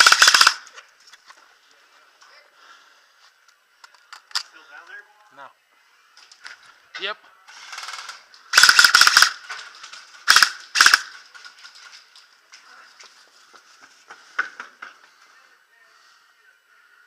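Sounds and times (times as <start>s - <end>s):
airsoft guns firing in bursts: 0.0s - 0.6s, 7.6s - 11.2s.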